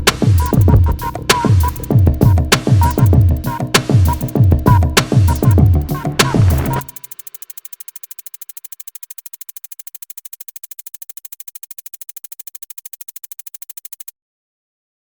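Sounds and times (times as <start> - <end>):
pulsing synthesizer buzz: 0.0 - 7.5.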